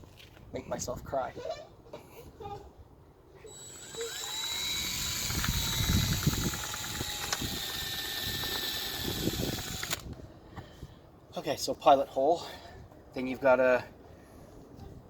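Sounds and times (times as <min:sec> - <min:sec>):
power drill whining: 0:03.5 - 0:10.2.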